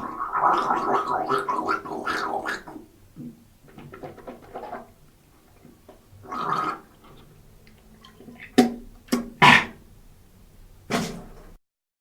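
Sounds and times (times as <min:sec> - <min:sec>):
person gargling: 0:00.0 - 0:02.7.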